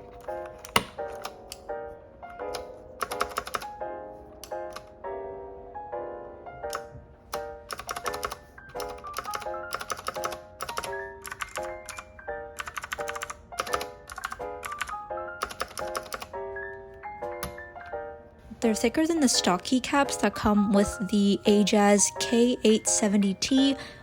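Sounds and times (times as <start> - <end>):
mechanical keyboard keys clacking: 0.0 - 1.7, 2.3 - 3.8, 4.4 - 4.9, 6.7 - 16.4, 17.2 - 18.0
light background music: 0.0 - 24.0.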